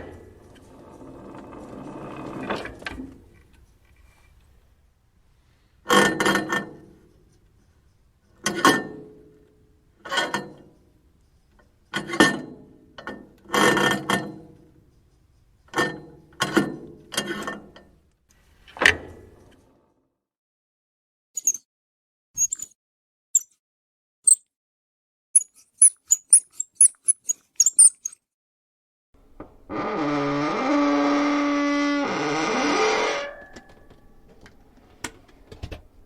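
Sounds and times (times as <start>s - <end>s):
metal creaking and clanking: 0.0s - 3.3s, 29.6s - 34.5s.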